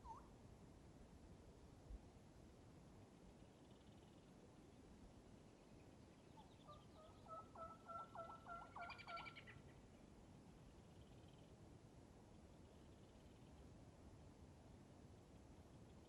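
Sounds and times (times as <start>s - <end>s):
faint turkey hen yelps: 0.0s - 0.3s, 6.4s - 9.8s.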